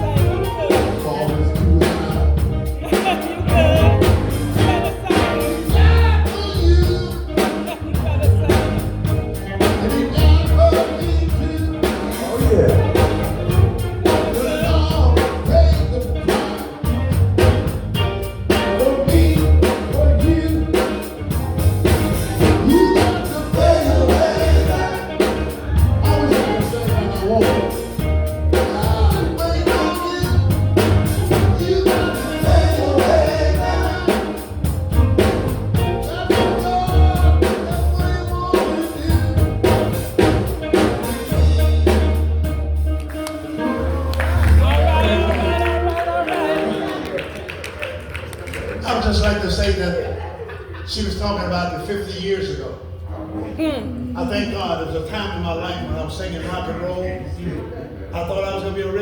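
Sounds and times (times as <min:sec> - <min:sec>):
gospel group singing: 0:00.0 - 0:42.3, 0:43.4 - 0:47.6
heavy bass line: 0:00.0 - 0:46.9
drum kit: 0:00.0 - 0:47.9.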